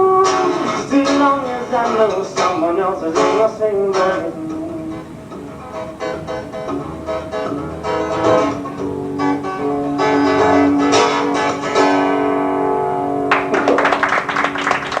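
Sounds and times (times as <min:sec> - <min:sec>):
acoustic guitar strumming: 0:00.0 - 0:14.9
audience applause: 0:13.3 - 0:15.0.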